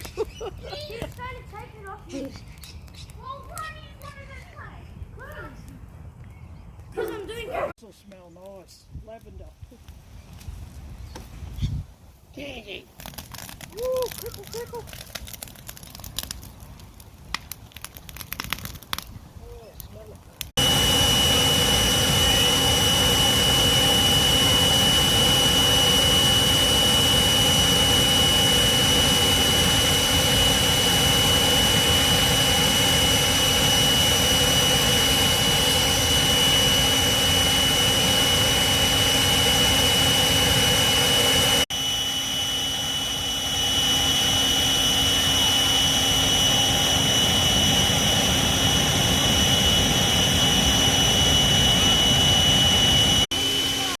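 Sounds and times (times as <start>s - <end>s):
high-pitched whine: 20.5s - 54.0s
loud mechanical roar: 20.6s - 54.0s.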